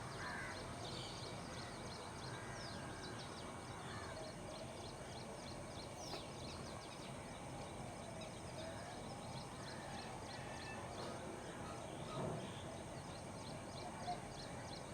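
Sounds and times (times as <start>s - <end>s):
small birds chirping: 5.1s - 7.1s.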